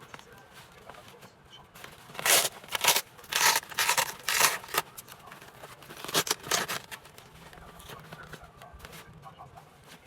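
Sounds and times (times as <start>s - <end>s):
nylon bag rustling: 2.0s - 5.1s.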